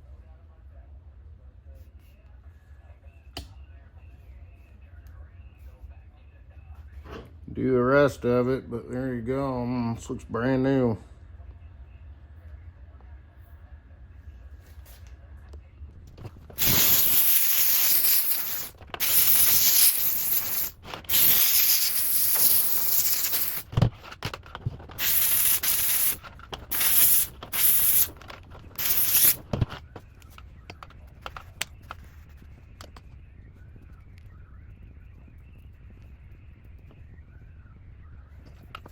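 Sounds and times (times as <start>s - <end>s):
steam cleaner hissing: 16.6s - 24.1s, 24.9s - 29.7s.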